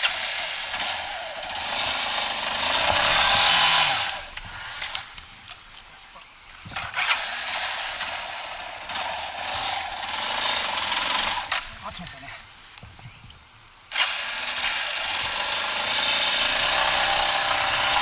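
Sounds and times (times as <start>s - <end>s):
dirt bike engine revving: 0.0s - 5.0s, 6.7s - 11.6s, 13.9s - 18.0s.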